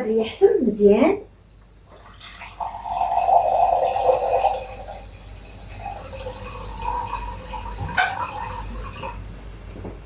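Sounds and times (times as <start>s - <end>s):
water pouring into a vessel: 1.8s - 9.3s.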